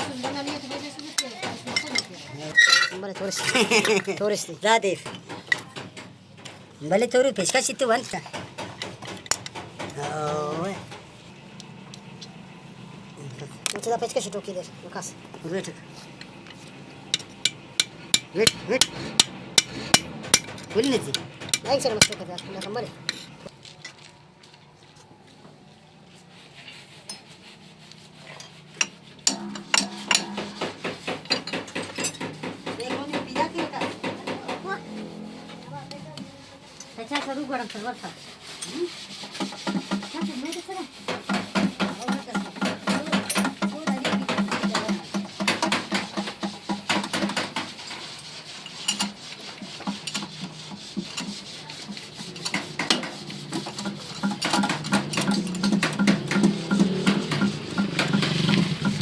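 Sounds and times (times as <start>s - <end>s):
metallic clinks and scraping: 0.0s - 4.3s, 16.2s - 24.1s, 28.2s - 30.6s, 52.1s - 59.0s
hammer striking metal: 17.1s - 23.3s, 29.3s - 35.7s, 52.3s - 59.0s.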